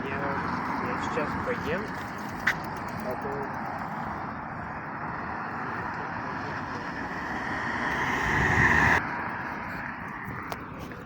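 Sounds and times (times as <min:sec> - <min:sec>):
motor vehicle passing: 0:00.0 - 0:09.4.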